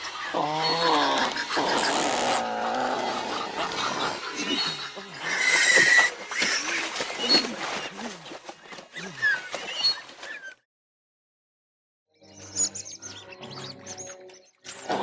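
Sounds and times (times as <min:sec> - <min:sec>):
creature wavering calls: 0:00.1 - 0:05.9.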